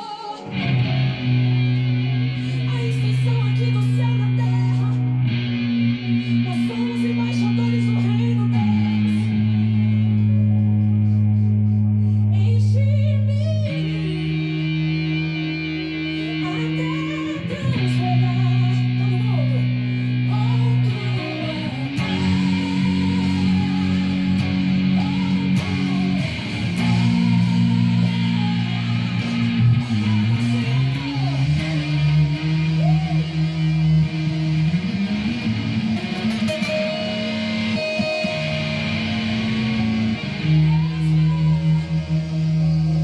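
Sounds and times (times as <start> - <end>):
electric guitar melody bending: 0.0 - 43.0
rock band playing: 19.6 - 42.6.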